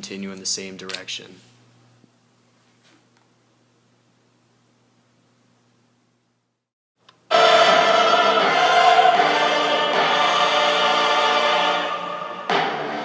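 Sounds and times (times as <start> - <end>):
choir singing chords: 7.3 - 13.0.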